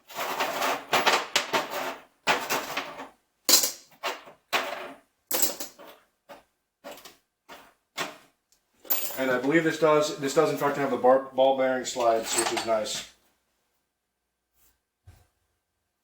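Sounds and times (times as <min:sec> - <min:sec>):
metal tools clinking in a drawer: 0:00.1 - 0:08.2, 0:08.8 - 0:09.6, 0:11.9 - 0:13.0.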